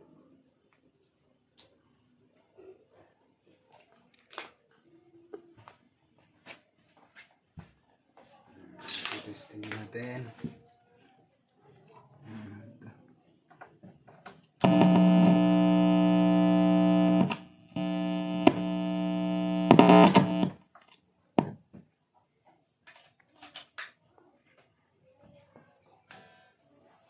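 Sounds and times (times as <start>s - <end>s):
guitar chords through amplifier: 14.6s - 20.6s
faint clicks: 14.6s - 21.0s.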